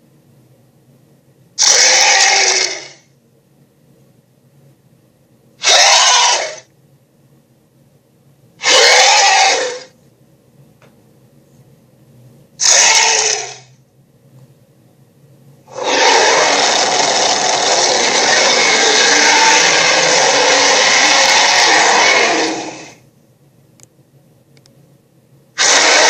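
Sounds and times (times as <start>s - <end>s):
monster roar: 1.6s - 3.0s, 5.6s - 6.6s, 8.6s - 9.9s, 12.6s - 13.7s, 15.7s - 23.0s, 25.6s - 26.0s.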